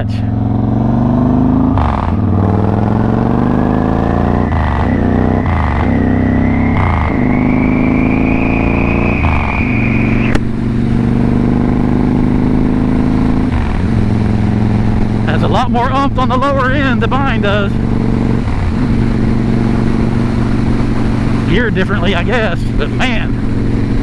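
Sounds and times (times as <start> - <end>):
motorcycle engine accelerating: 0.0 - 24.0
rising whine: 2.1 - 10.7.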